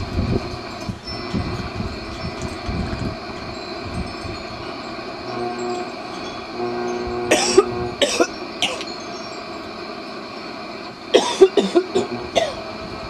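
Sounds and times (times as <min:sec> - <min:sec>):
person coughing: 0:07.3 - 0:08.8, 0:11.2 - 0:12.6
shortwave radio tones: 0:11.9 - 0:12.8.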